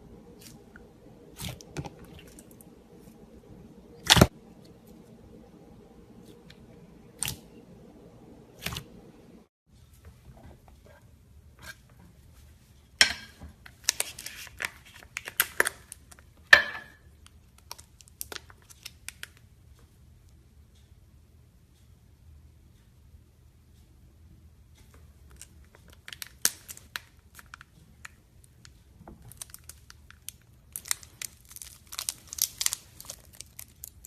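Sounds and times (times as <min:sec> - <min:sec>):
slime popping and crackling: 0:29.3 - 0:34.0.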